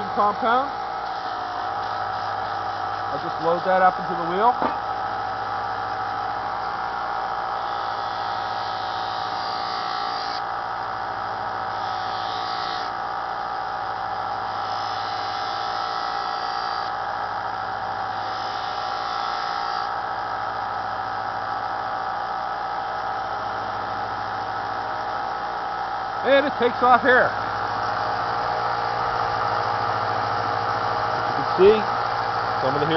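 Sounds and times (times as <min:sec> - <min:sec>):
belt sander motor running: 0:00.0 - 0:32.9
knife hissing on buffing wheel: 0:01.0 - 0:04.0, 0:07.6 - 0:10.4, 0:11.7 - 0:13.0, 0:14.4 - 0:16.9.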